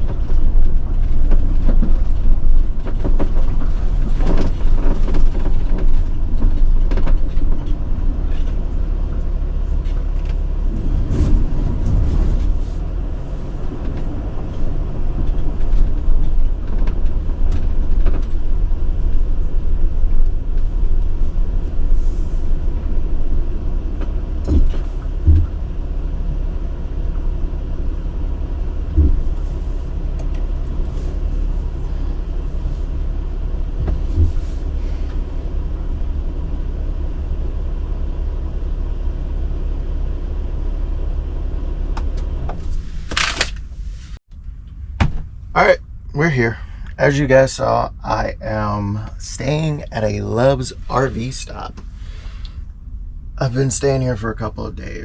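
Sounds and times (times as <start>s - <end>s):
bumps and knocks: 0.0s - 7.8s
van road and engine rumble: 0.0s - 55.0s.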